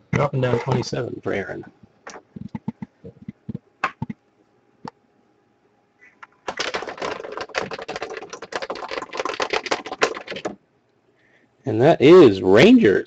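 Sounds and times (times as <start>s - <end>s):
cards clicking being counted: 6.2s - 10.6s.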